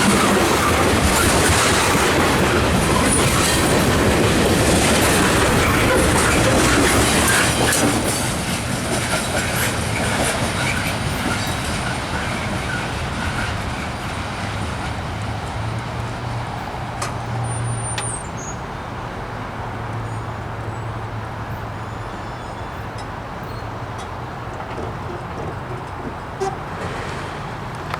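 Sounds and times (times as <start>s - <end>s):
train wheels clicking over rails: 0.0s - 17.4s, 23.9s - 27.9s.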